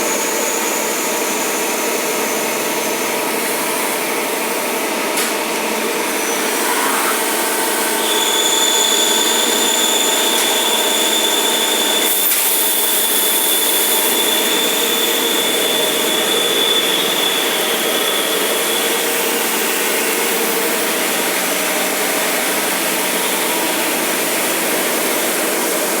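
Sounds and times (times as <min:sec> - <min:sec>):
high whine: 0:06.1 - 0:12.0.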